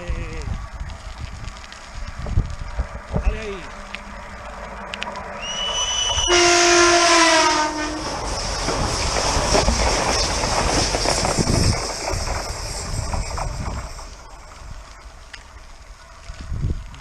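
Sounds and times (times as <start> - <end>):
train rumbling past: 0.0 - 17.0
train horn: 5.4 - 8.1.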